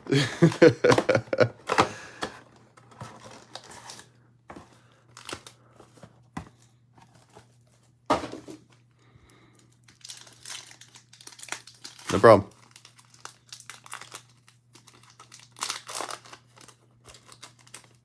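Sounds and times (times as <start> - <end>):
plastic wrapping tearing and crinkling: 3.1 - 4.1, 9.7 - 18.0.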